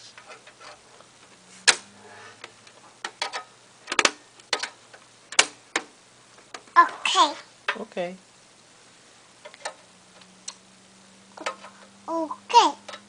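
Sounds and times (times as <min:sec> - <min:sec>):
computer hardware clicking and knocking: 0:01.7 - 0:06.7.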